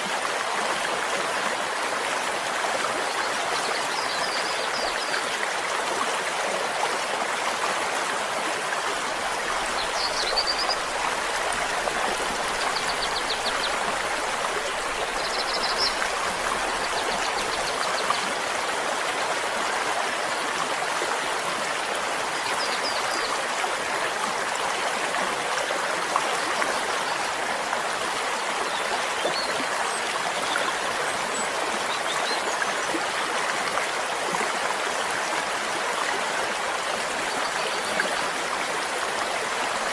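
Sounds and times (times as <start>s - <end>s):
stream water babbling: 0.0s - 39.9s.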